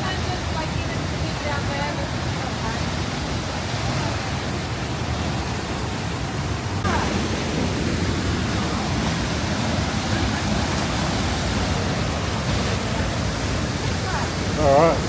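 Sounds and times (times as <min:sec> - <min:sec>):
waterfall rushing: 0:00.0 - 0:15.0.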